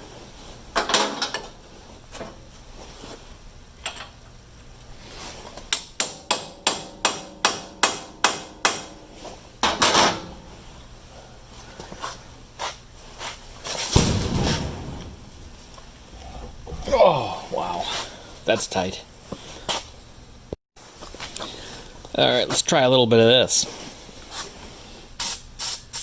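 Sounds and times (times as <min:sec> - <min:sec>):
hammer tapping metal: 0:05.7 - 0:09.0
loud knock: 0:13.9 - 0:16.9
heavy hammer strike: 0:13.9 - 0:17.0.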